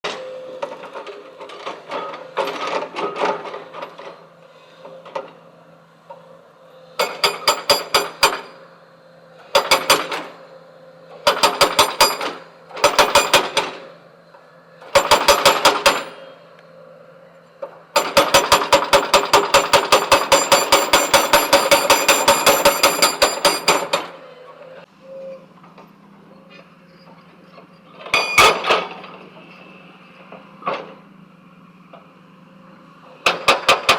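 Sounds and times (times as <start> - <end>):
hydraulic breaker hammering stone: 7.0 - 8.6, 9.5 - 10.3, 11.2 - 13.8, 14.9 - 16.3, 18.0 - 24.2, 33.2 - 33.9.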